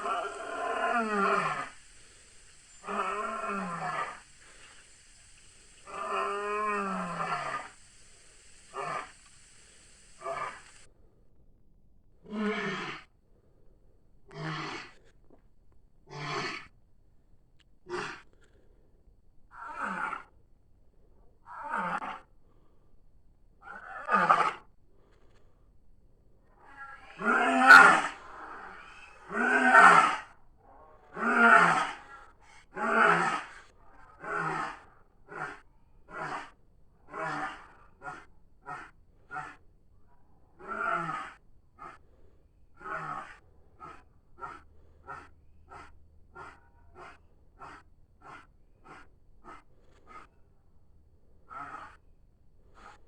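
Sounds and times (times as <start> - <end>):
breathy animal bellows: 0.0 - 10.8, 26.6 - 39.6, 40.6 - 50.4, 51.5 - 52.1
short pitched animal calls: 0.0 - 10.9, 26.7 - 30.2.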